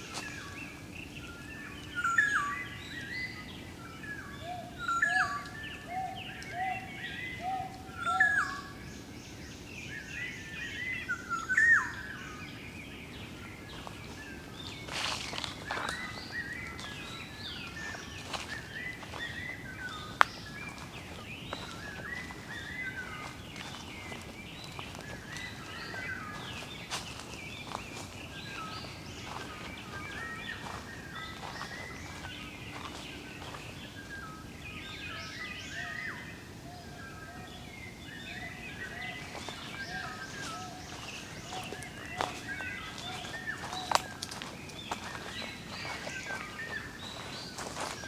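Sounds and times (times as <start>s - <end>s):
songbirds chirping and twittering: 0.0s - 48.0s.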